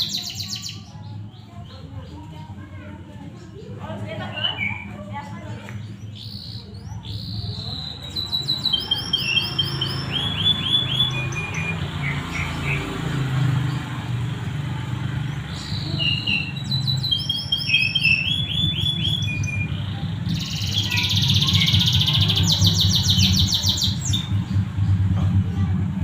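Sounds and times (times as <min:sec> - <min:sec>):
canary singing trills: 0:00.0 - 0:02.6, 0:03.4 - 0:13.9, 0:15.2 - 0:25.0
low steady rumble: 0:21.2 - 0:26.0.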